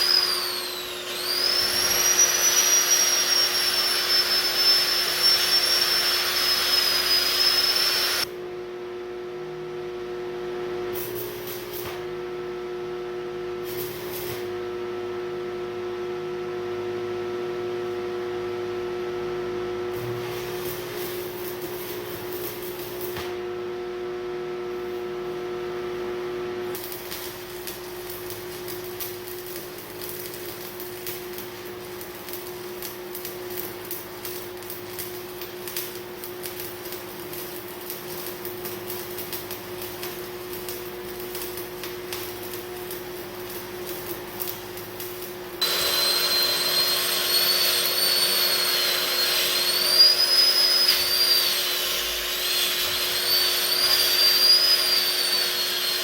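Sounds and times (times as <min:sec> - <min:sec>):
power tool whining: 0:00.0 - 0:08.3, 0:45.6 - 0:56.0
welding hum and crackle: 0:00.0 - 0:08.3, 0:10.7 - 0:12.5, 0:13.5 - 0:15.0, 0:19.5 - 0:23.7, 0:26.6 - 0:56.0.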